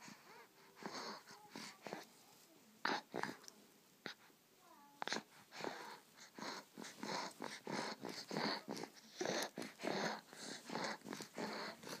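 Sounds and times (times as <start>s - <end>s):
animal wheezing: 5.2s - 12.0s.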